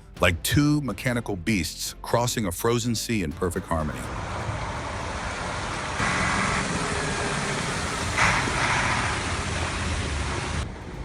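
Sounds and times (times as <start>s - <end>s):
heavy ship engines: 3.8s - 11.0s
ships rushing through sea ice: 4.0s - 10.6s.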